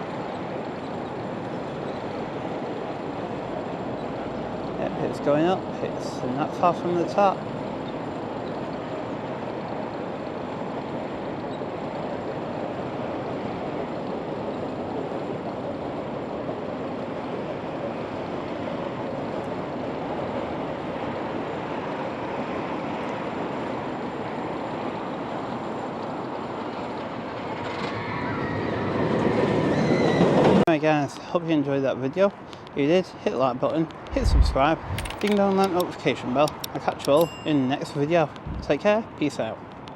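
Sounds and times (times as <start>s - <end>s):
outdoor background rushing: 33.9s - 37.5s.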